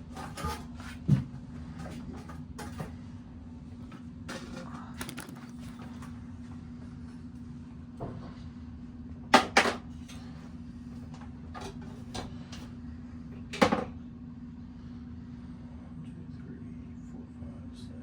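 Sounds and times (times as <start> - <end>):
steady low hum: 10.0 - 18.0.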